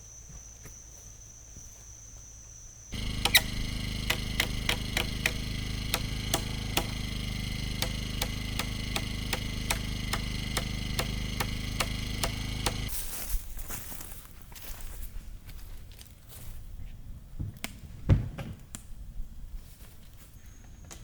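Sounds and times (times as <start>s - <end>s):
machine motor running: 3.0s - 12.9s
regular clicking: 3.0s - 12.9s.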